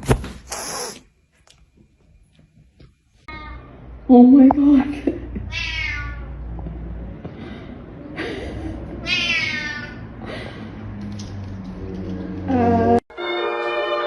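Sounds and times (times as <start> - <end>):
cat meowing: 3.3 - 3.7, 5.5 - 6.4, 9.0 - 10.0.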